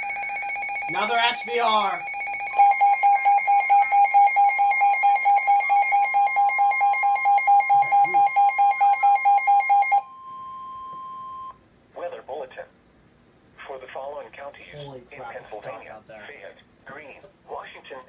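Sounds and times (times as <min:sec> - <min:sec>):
rapid alert beeping: 0:00.0 - 0:10.0
steady alarm tone: 0:00.0 - 0:11.6.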